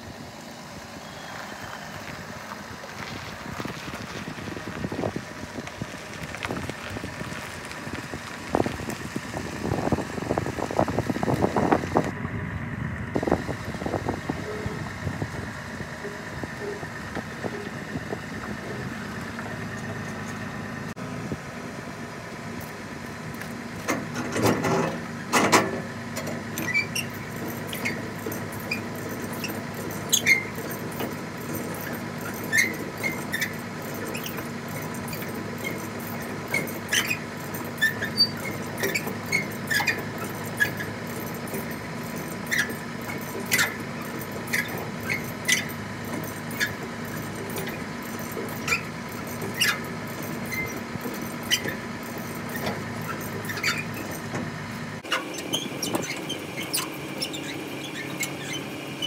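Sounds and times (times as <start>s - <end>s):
vehicle running noise: 0.0s - 59.0s
squeaks and rattles: 13.2s - 20.9s, 23.8s - 59.0s.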